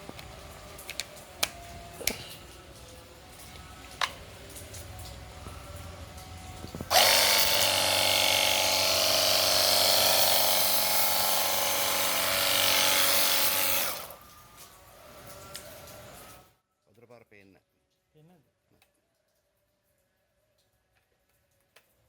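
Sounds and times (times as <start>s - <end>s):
pressure washer pump whine: 0.0s - 16.5s.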